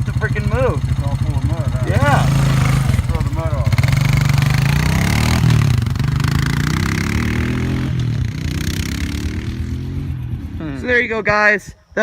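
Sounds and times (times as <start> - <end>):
atv engine revving: 0.0 - 11.3.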